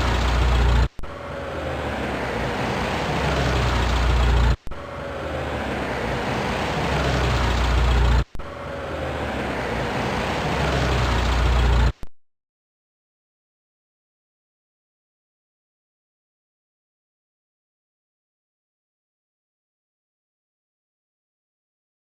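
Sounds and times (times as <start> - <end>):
vehicle engine running: 0.0 - 12.1.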